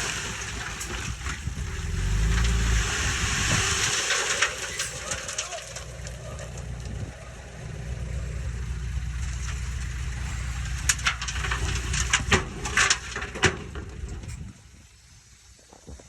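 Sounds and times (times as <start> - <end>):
diesel engine rumbling: 0.0 - 15.7.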